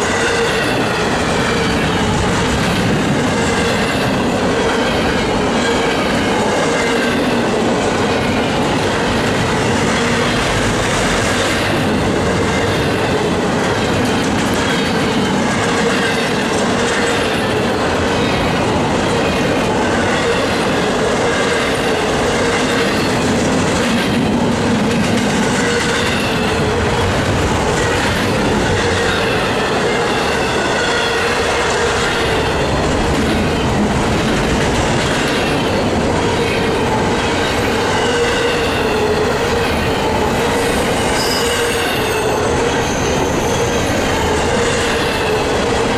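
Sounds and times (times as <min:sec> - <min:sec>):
steel wheels on rail: 0:00.0 - 0:45.9
thin wheel squeal: 0:40.3 - 0:44.2.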